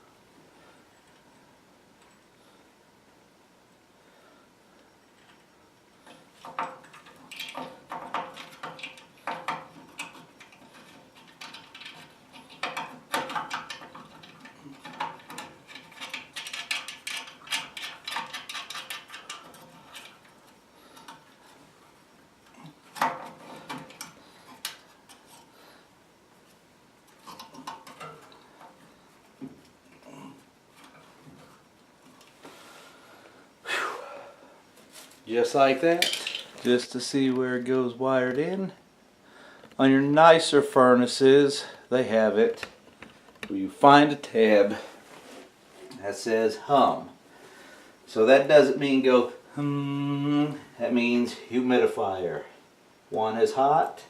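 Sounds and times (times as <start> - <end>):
metal tools clinking and clattering: 35.9 - 36.7.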